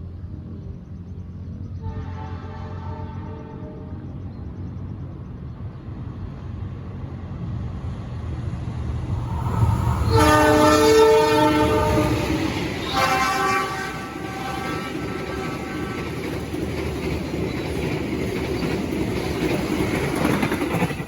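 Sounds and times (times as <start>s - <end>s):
train rumble: 0.0s - 21.0s
train horn chord: 1.8s - 4.0s, 9.6s - 16.1s.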